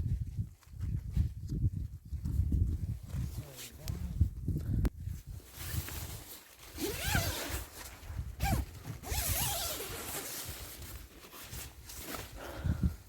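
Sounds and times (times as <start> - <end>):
tent zip pulled open: 5.4 - 12.3.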